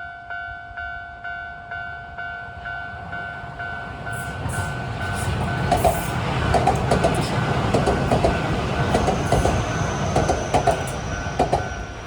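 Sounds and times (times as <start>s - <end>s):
train wheels rumbling: 2.0s - 12.0s
rail-joint clacks: 3.7s - 12.0s.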